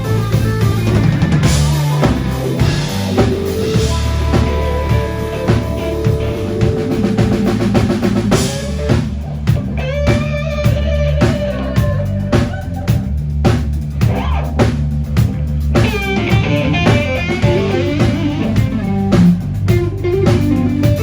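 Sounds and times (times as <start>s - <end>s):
electric guitar bending notes: 0.0s - 9.2s, 16.1s - 21.0s
bass line: 0.0s - 21.0s
drum kit beat: 0.0s - 21.0s.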